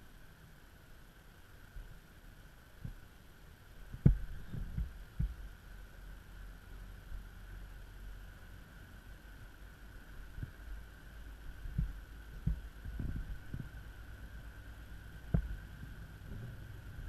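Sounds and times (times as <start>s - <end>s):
boat engine humming: 2.1s - 17.0s
dull thumps: 15.3s - 15.6s.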